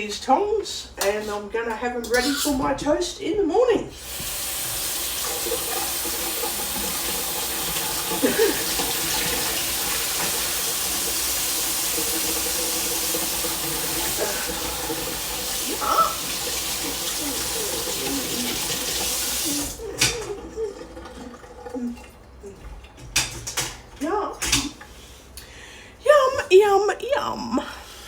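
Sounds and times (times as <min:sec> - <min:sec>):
tap water running into sink: 0:04.0 - 0:25.0.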